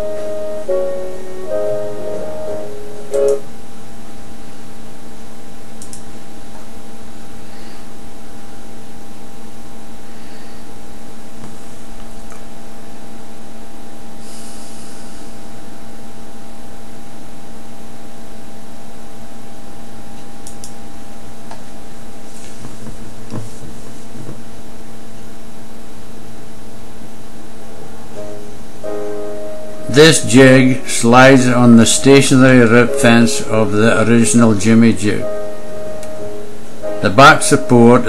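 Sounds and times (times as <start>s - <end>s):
constant hiss: 0.0s - 4.7s, 27.5s - 38.0s
steady tonal hum: 0.0s - 5.7s, 22.0s - 38.0s.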